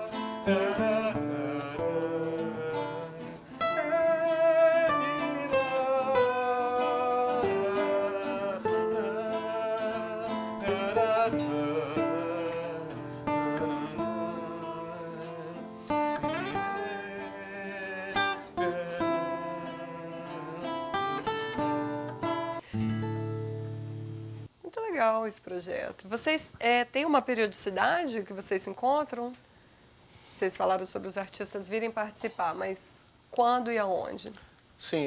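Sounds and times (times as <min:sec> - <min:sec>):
acoustic guitar plucked and strummed: 0:00.0 - 0:24.5.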